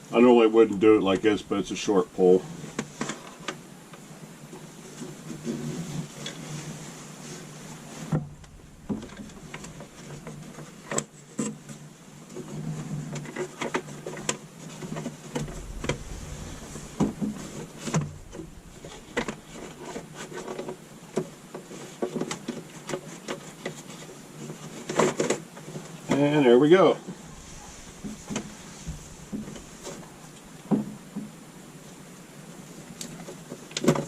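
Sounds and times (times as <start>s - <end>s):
steady low hum: 0.0s - 3.0s, 7.6s - 11.0s, 15.2s - 21.5s, 26.5s - 31.8s.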